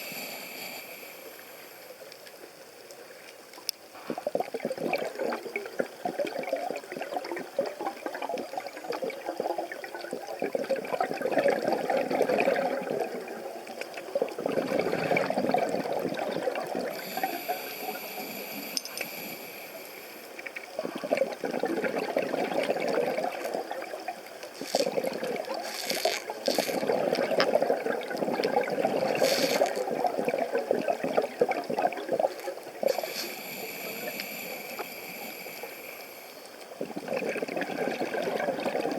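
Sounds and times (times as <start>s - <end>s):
underwater crackling grinding: 3.6s - 38.9s
bubbling water: 4.0s - 38.9s
thin high whine: 17.0s - 20.4s, 32.8s - 36.6s.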